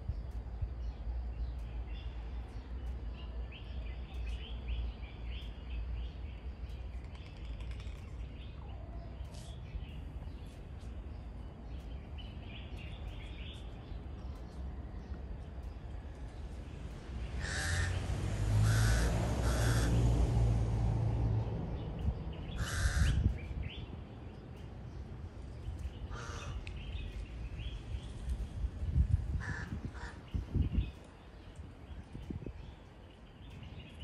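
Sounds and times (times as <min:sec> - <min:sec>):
birds giving raspy calls: 0:17.4 - 0:20.0, 0:22.5 - 0:23.8, 0:25.9 - 0:27.2, 0:29.3 - 0:31.0.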